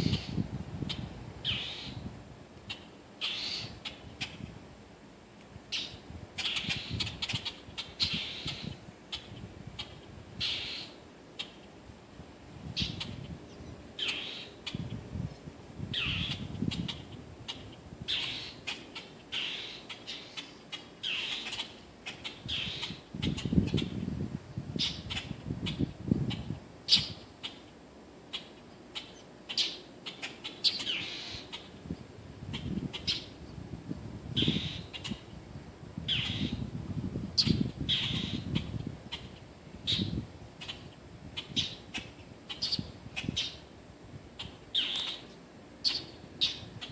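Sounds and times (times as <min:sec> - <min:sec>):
baby bird calling: 0:00.0 - 0:02.1, 0:02.7 - 0:04.5, 0:05.7 - 0:11.6, 0:12.8 - 0:13.3, 0:14.0 - 0:15.0, 0:15.9 - 0:24.0, 0:24.8 - 0:27.7, 0:28.3 - 0:31.8, 0:32.5 - 0:33.4, 0:34.4 - 0:35.3, 0:36.1 - 0:36.6, 0:37.4 - 0:43.7, 0:44.4 - 0:46.9
baby bird chirping: 0:18.1 - 0:23.9, 0:37.4 - 0:39.3, 0:44.4 - 0:45.2.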